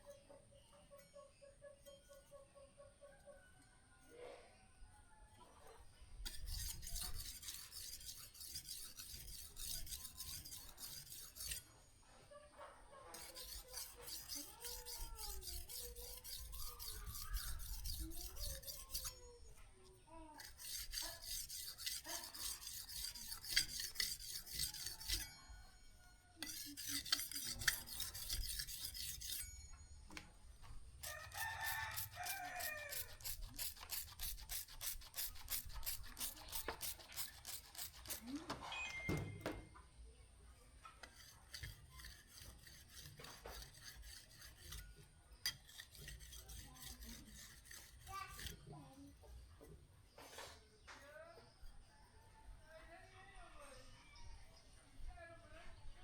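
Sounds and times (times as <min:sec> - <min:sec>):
knife scraping on abrasive: 0:06.3 - 0:11.8, 0:13.1 - 0:19.7, 0:20.4 - 0:30.0, 0:31.0 - 0:38.4, 0:41.0 - 0:49.0
rooster crowing: 0:31.0 - 0:33.2.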